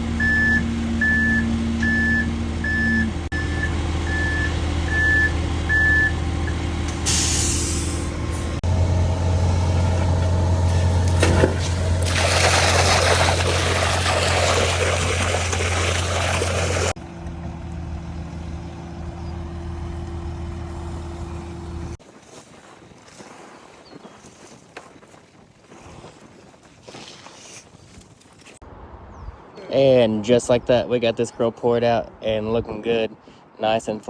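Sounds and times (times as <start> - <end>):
diesel truck engine running: 0.0 - 22.0.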